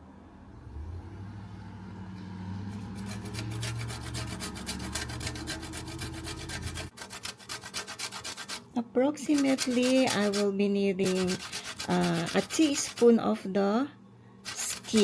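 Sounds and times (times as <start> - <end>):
grater rasping: 2.6 - 13.2, 14.4 - 15.0.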